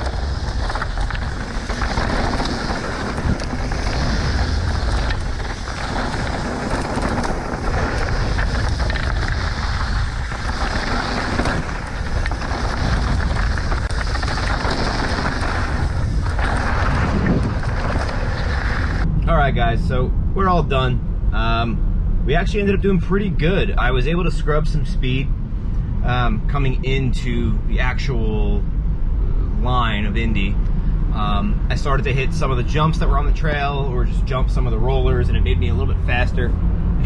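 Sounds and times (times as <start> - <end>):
tyre and trail noise: 0.0 - 21.5
wind rumble on microphone: 0.0 - 37.0.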